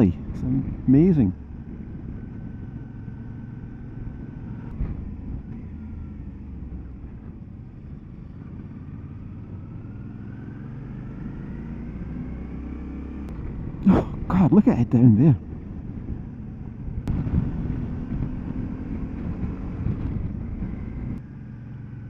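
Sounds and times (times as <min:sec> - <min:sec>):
road and wind noise: 0:00.0 - 0:22.0
motorcycle engine running: 0:00.2 - 0:14.3, 0:15.0 - 0:22.0.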